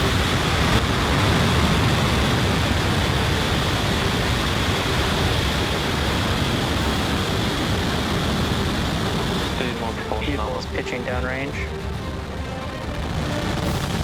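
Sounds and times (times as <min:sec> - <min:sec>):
rocket engines roaring: 0:00.0 - 0:14.0.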